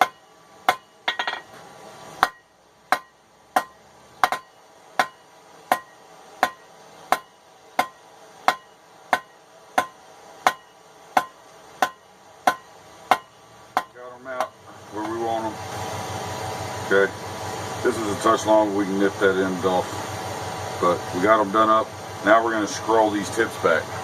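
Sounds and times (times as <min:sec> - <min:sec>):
hammer ringing on anvil: 0:00.0 - 0:01.5, 0:02.2 - 0:14.5.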